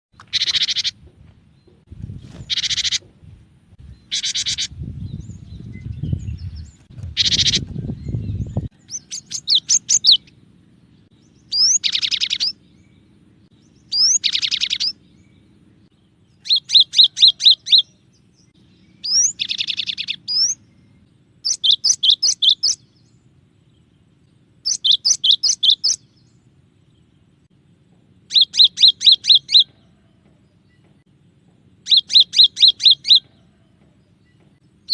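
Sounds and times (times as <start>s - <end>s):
faint steady hum: 0.2s - 34.9s
low rumbling noise: 0.9s - 21.5s
bird singing high ringing notes: 3.9s - 27.3s, 28.2s - 30.8s, 31.7s - 34.9s.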